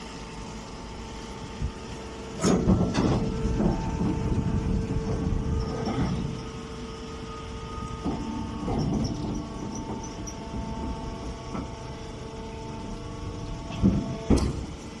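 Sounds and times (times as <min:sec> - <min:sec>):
baling machine humming: 0:00.0 - 0:15.0
machine knocks and clanks: 0:02.4 - 0:06.5, 0:07.7 - 0:12.1, 0:13.4 - 0:15.0.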